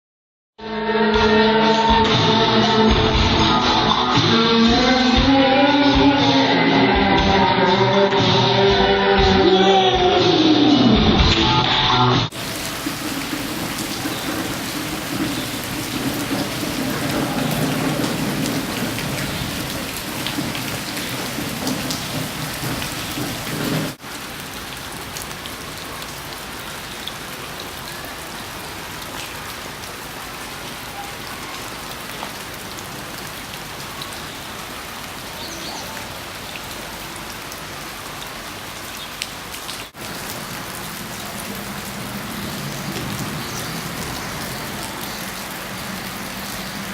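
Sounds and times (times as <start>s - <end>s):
steady rain falling: 12.3s - 46.9s.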